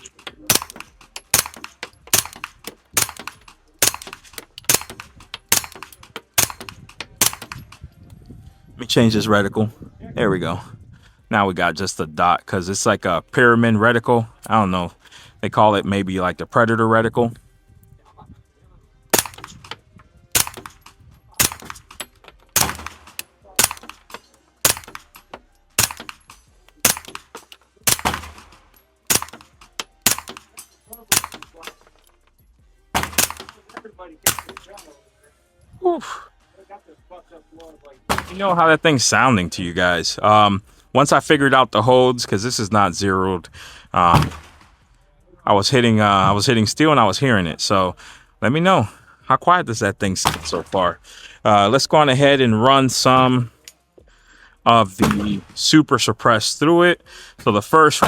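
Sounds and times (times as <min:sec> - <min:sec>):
suppressed gunshots: 0:00.0 - 0:07.9, 0:19.1 - 0:32.0, 0:32.9 - 0:35.0, 0:38.0 - 0:38.8, 0:44.1 - 0:45.0, 0:50.2 - 0:51.0, 0:55.0 - 0:55.8.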